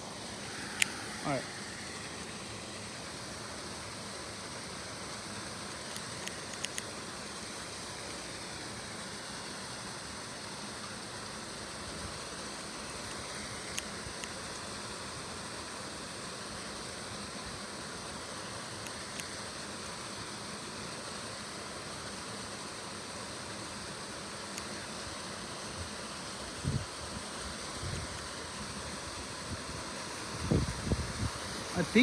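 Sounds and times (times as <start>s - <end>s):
steady background hiss: 0.0s - 32.0s
faint sharp clicks: 5.8s - 6.9s.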